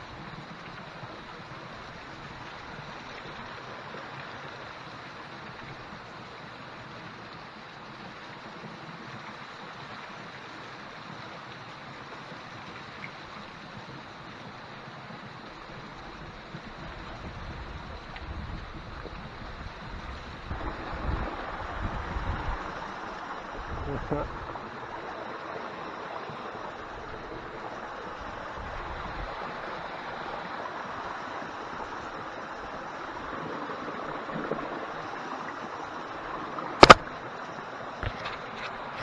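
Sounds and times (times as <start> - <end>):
wind rumble on microphone: 16.1 - 22.9, 23.5 - 24.6
mountain stream rushing: 35.8 - 37.1.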